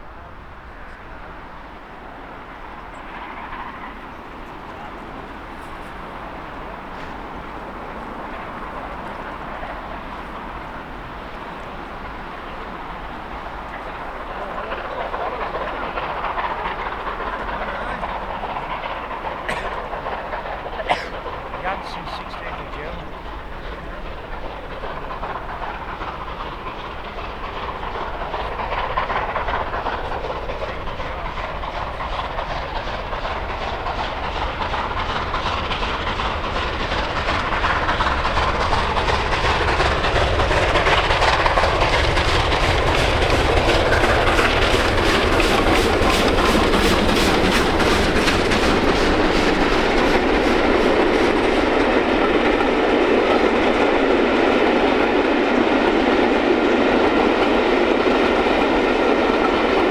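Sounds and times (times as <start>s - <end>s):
steam exhaust beats: 0.0s - 59.9s
steam train passing: 0.0s - 59.9s.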